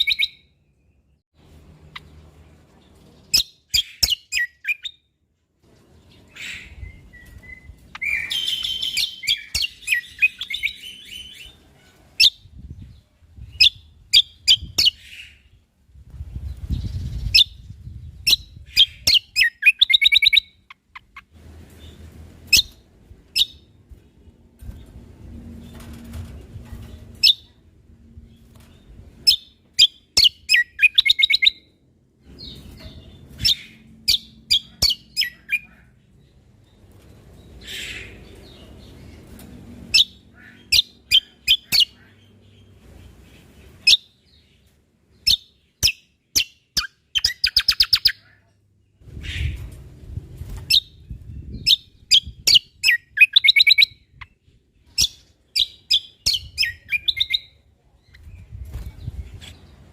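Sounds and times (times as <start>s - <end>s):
bird singing with trills: 0.0s - 1.2s, 6.1s - 11.6s, 16.5s - 21.3s, 29.2s - 31.7s, 39.9s - 48.4s, 50.7s - 59.8s.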